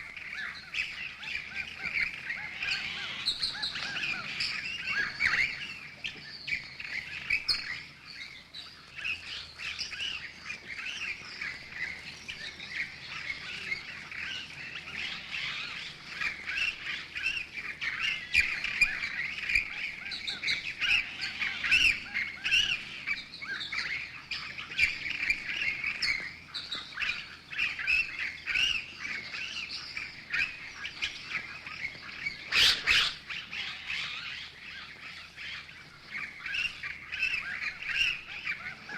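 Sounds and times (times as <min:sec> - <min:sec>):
flock of birds chattering: 0:00.0 - 0:38.9.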